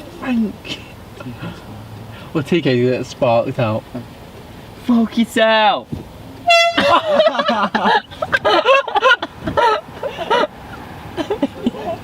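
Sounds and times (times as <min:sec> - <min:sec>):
air horn blast: 0:06.4 - 0:07.1
voices laughing and yelling: 0:06.7 - 0:12.0.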